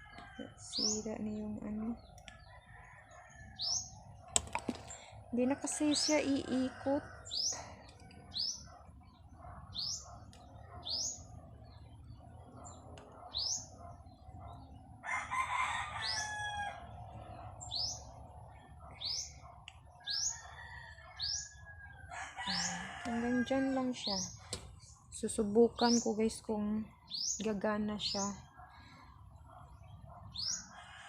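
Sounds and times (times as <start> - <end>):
small bird chirping: 9.7 - 14.6
rooster crowing: 15.0 - 16.9, 20.2 - 23.6, 30.6 - 31.0.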